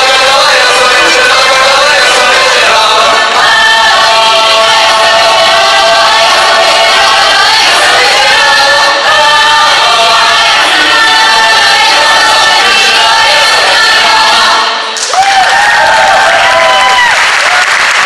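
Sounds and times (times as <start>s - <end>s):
folk group singing together: 0.0s - 15.0s.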